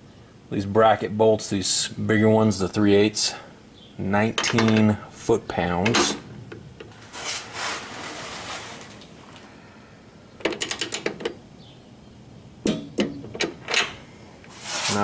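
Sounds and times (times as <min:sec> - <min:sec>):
soft handling noise: 0:05.8 - 0:09.5, 0:14.4 - 0:15.0.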